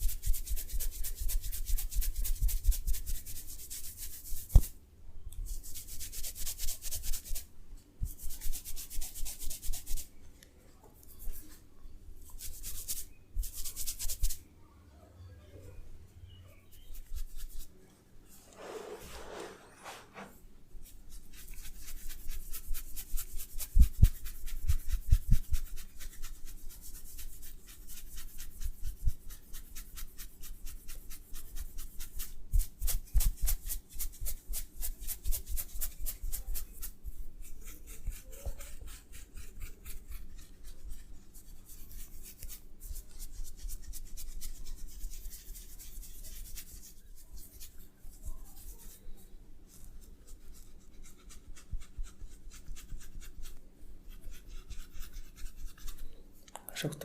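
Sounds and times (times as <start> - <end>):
hands rubbing over skin: 0.1 - 4.8, 5.4 - 10.1, 12.2 - 14.4.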